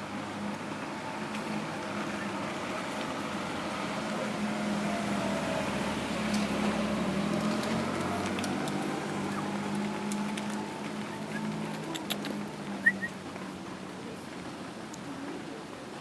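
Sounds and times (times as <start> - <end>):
faint clicks: 7.3 - 13.5.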